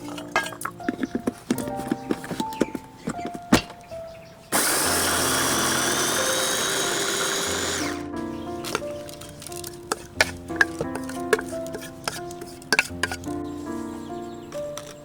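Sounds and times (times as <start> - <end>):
background music: 0.0 - 15.0
small electric motor whining: 4.5 - 8.0.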